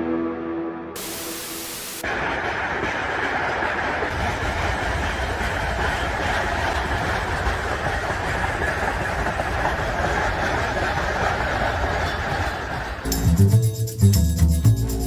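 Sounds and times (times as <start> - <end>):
music: 0.0 - 1.0, 13.0 - 15.0.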